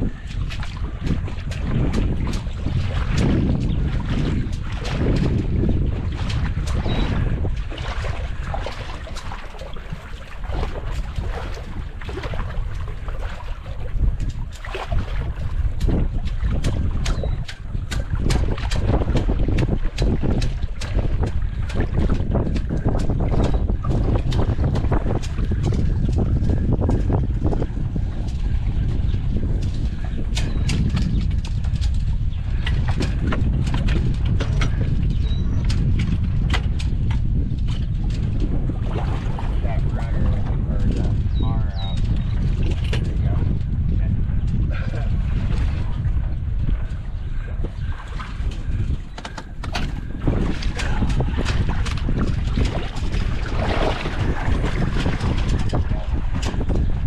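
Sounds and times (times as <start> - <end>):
water lapping and splashing: 0.0 - 57.0
wind buffeting microphone: 0.0 - 57.0
sharp knocks and slaps: 15.8 - 26.2, 35.6 - 38.3, 49.2 - 53.2.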